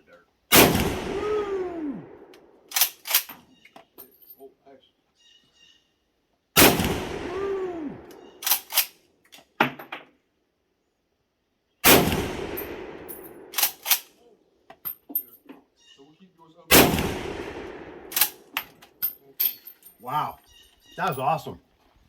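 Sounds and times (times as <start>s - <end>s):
rifle shots echoing: 0.5s - 3.3s, 6.6s - 8.9s, 11.8s - 14.1s, 16.7s - 18.6s
rifle bolt clacking: 2.7s - 3.4s, 8.1s - 8.9s, 13.5s - 14.1s, 18.1s - 19.0s.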